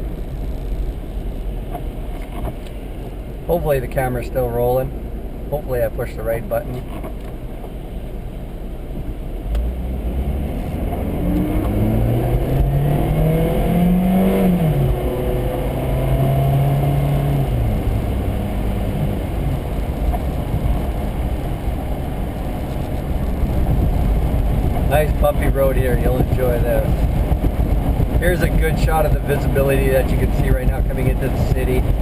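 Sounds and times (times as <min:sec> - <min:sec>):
tyres rumbling on road: 0:00.0 - 0:32.0
car engine accelerating: 0:08.9 - 0:32.0.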